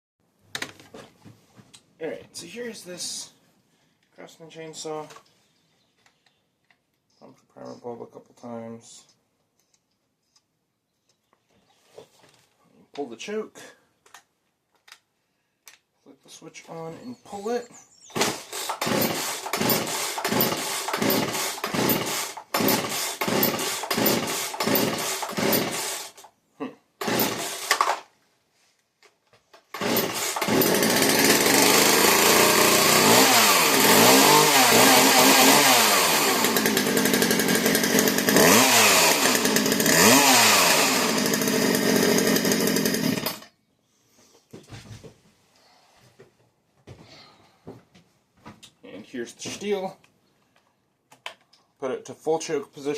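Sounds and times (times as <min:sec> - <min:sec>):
chainsaw pull-starting: 0:18.1 - 0:26.3, 0:27.0 - 0:28.1, 0:29.6 - 0:43.5
chainsaw revving: 0:18.2 - 0:26.3, 0:27.0 - 0:28.1, 0:29.7 - 0:43.5.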